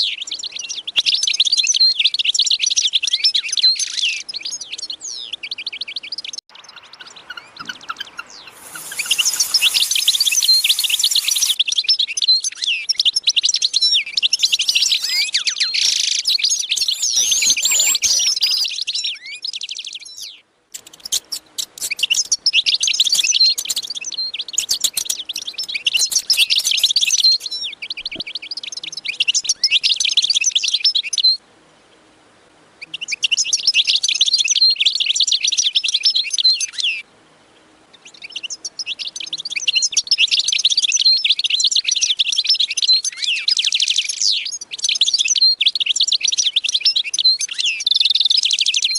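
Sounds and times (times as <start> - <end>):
small birds chirping and twittering: 0.0 - 32.2, 32.8 - 48.9.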